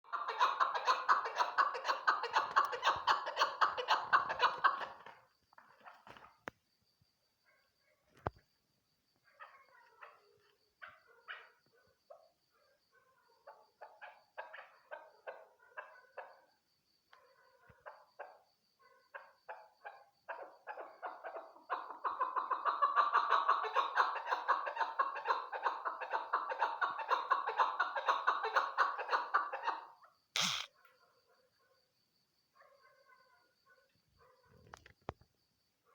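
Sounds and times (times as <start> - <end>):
brief loud noise: 30.4 - 30.7
partridge calling: 30.4 - 30.7
single click: 30.4 - 30.7.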